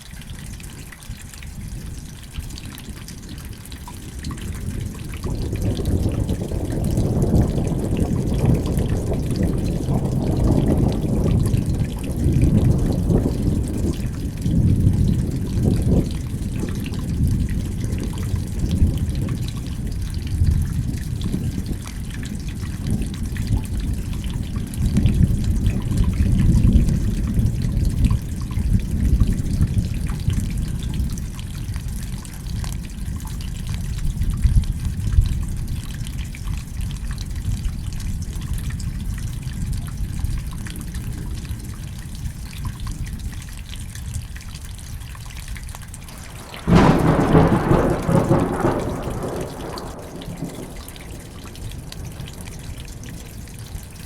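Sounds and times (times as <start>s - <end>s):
rain dripping and trickling: 0.0s - 54.0s
low rumble: 45.7s - 54.0s.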